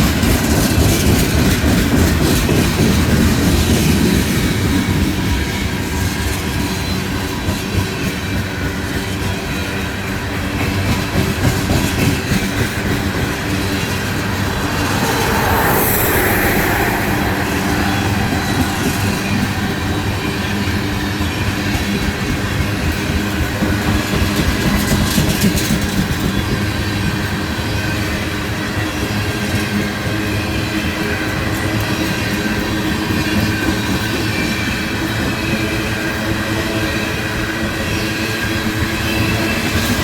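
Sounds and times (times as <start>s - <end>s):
train cars rumbling past: 0.0s - 32.6s.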